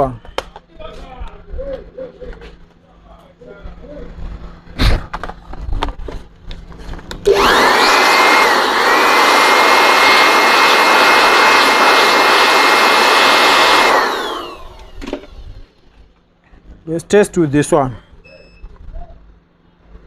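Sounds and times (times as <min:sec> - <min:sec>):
electric blower motor whining: 0:06.9 - 0:15.8.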